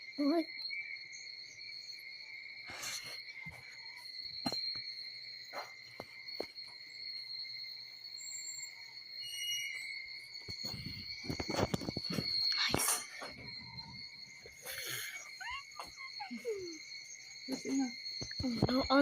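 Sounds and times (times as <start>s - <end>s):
high-pitched insect trill: 0.0s - 19.0s.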